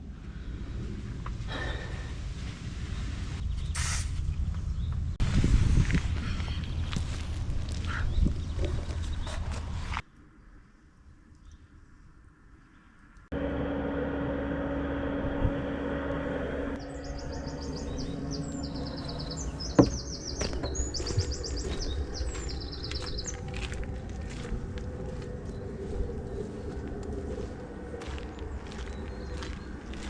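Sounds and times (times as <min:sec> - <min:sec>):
outdoor background noise: 0:00.0 - 0:30.0
steady two-tone hum: 0:13.3 - 0:29.8
songbird trilling: 0:16.8 - 0:23.6.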